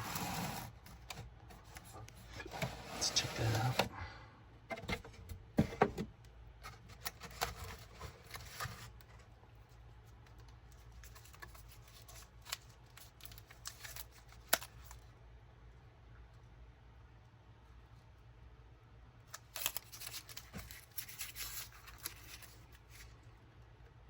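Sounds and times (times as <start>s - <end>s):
paper rustling: 9.9s - 15.0s, 19.3s - 23.3s.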